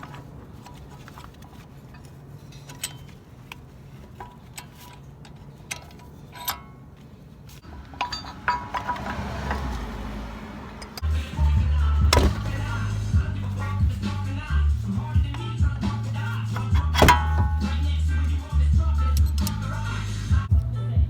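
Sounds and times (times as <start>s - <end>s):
metal parts clinking: 0.0s - 9.8s, 12.1s - 18.4s
handling noise: 0.0s - 10.0s, 10.6s - 18.4s
music: 11.0s - 21.0s.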